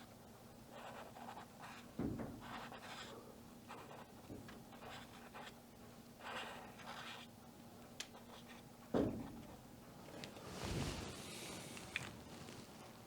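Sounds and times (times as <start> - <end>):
faint steady hum: 0.0 - 13.0
pen scratching while writing: 0.8 - 1.8, 2.4 - 3.1, 4.8 - 5.5, 6.2 - 7.3.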